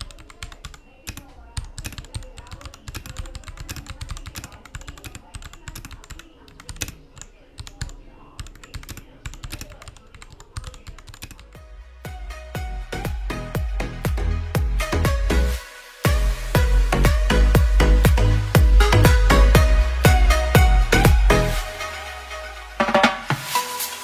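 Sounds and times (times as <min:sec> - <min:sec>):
mechanical keyboard typing: 0:00.0 - 0:11.6.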